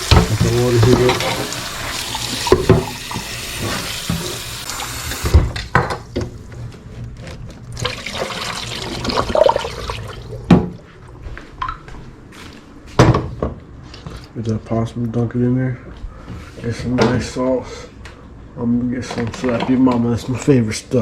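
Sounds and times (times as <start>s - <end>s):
water pouring into pot: 7.8s - 10.5s.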